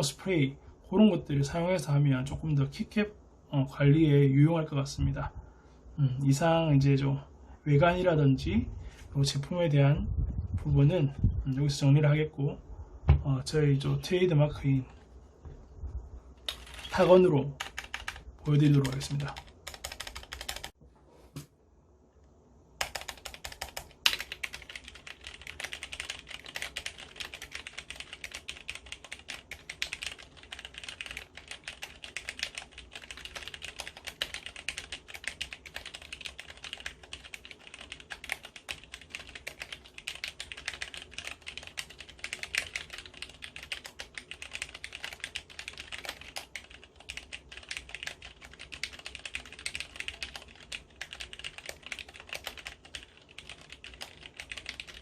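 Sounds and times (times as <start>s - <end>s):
fast typing on mechanical keyboard: 16.5s - 20.8s, 22.8s - 55.0s.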